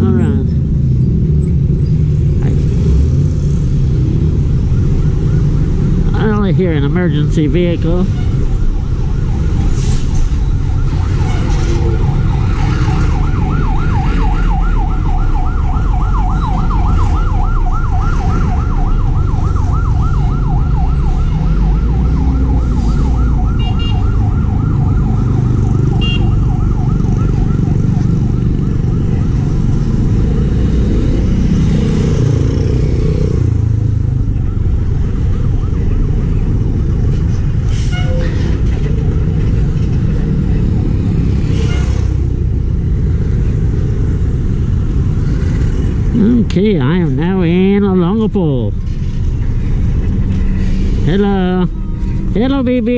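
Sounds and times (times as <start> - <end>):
road traffic rumble: 0.0 - 52.9
emergency siren yelping: 4.0 - 6.4, 8.0 - 31.6, 32.2 - 38.0.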